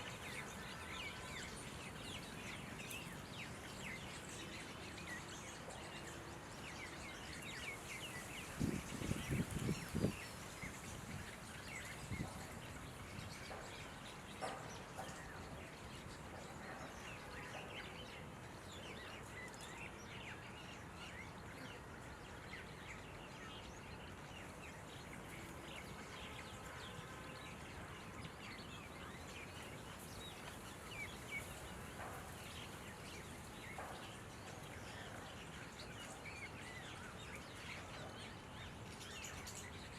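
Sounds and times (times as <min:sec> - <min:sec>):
birds chirping: 0:00.0 - 0:39.9
outdoor background noise: 0:00.0 - 0:39.9.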